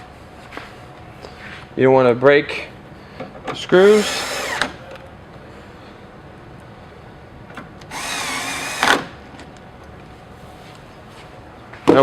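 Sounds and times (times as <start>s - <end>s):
electric screwdriver whirring: 3.8s - 4.8s, 7.9s - 9.1s.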